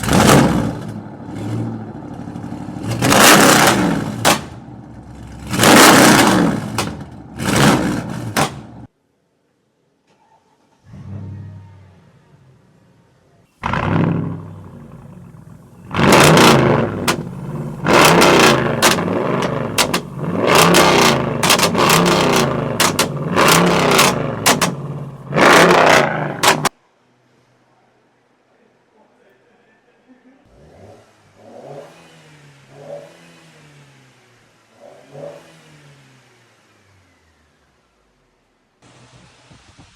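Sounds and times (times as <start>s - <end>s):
car engine revving: 0.0s - 8.9s, 13.6s - 26.7s, 30.5s - 38.1s
exhaust crack: 0.0s - 8.9s, 13.6s - 26.8s.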